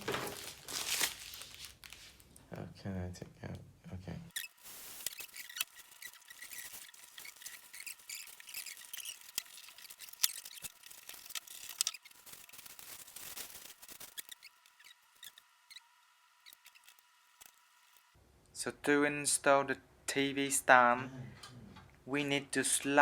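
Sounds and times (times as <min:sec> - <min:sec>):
packaging rustling and squeaking: 0:00.0 - 0:02.4, 0:04.3 - 0:18.2.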